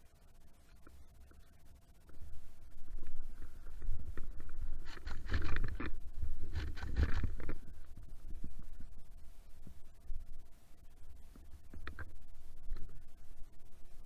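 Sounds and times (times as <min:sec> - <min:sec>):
low rumble of handling: 0:00.0 - 0:14.0
rustling scraping bursts: 0:03.4 - 0:07.9.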